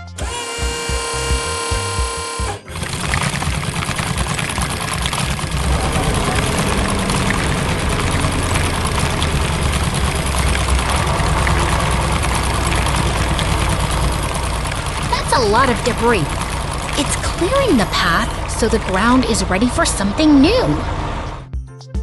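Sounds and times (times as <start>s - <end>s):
excavator engine rumbling: 2.3s - 21.5s.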